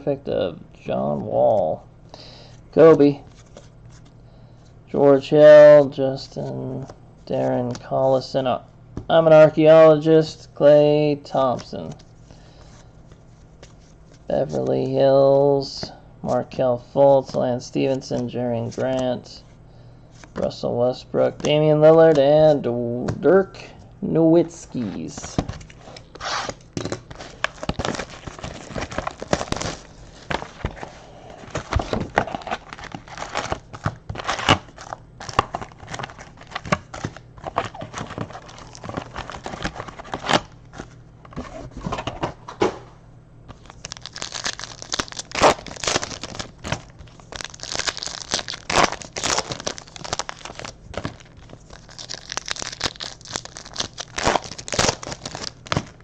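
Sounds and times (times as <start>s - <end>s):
foil wrappers tearing and crinkling: 25.1s - 40.9s, 43.5s - 56.0s.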